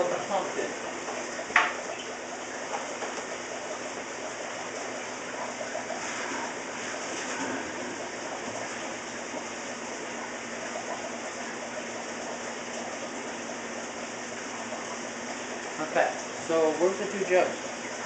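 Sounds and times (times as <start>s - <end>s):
electric pump humming: 0.0s - 18.0s
water running through hoses: 0.0s - 18.0s.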